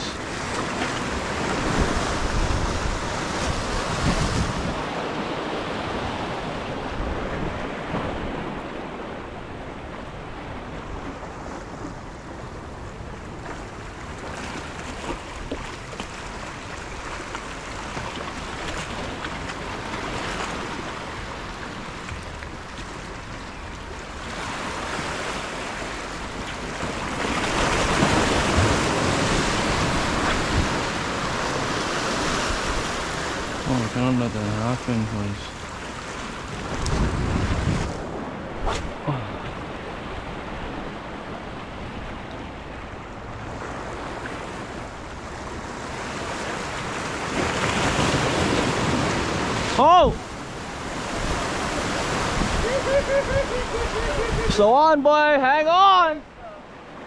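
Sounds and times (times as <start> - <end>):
wind buffeting microphone: 0.0 - 5.0, 5.8 - 33.7, 36.2 - 44.2, 51.0 - 54.6
ocean waves breaking: 0.0 - 57.0.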